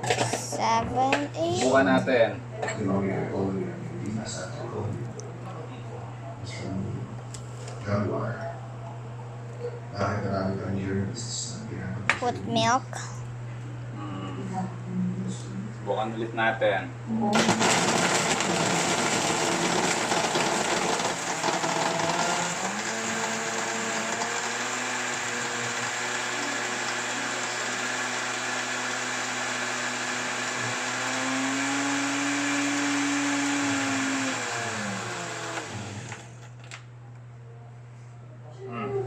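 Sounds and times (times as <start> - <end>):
electric blender crushing ice: 17.3 - 36.5.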